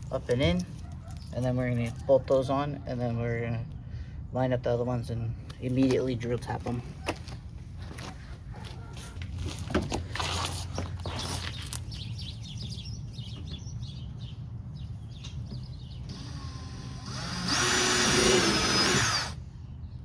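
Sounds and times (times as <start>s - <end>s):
power drill whining: 16.1s - 19.4s.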